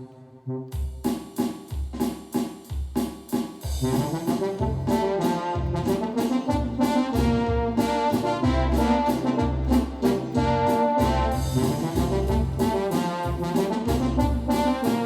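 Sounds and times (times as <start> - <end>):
synthesizer brass chords: 3.8 - 15.0
deep synth bass line: 9.4 - 14.6.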